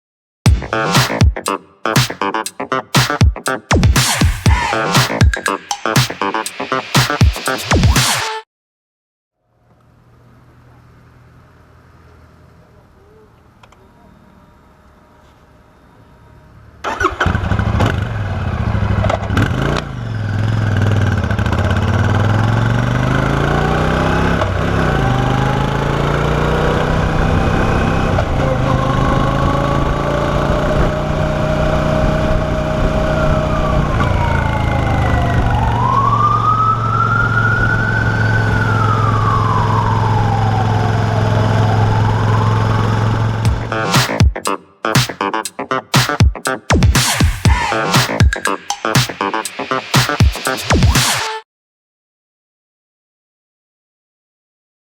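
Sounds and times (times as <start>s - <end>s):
siren-like rising tone: 4.0s - 8.4s, 21.8s - 44.3s, 46.7s - 51.4s
motorcycle engine starting and idling: 16.8s - 27.4s.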